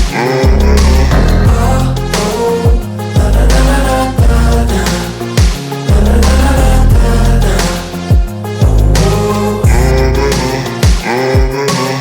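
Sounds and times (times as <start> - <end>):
rap beat with deep bass: 0.0 - 12.0
bass hit sliding down: 0.5 - 2.2.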